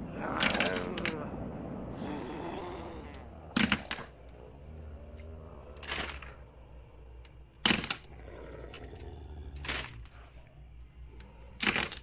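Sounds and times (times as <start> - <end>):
sharp cracks or knocks: 0.4 - 1.2, 3.5 - 4.2, 7.6 - 8.1, 9.6 - 10.1, 11.6 - 12.0.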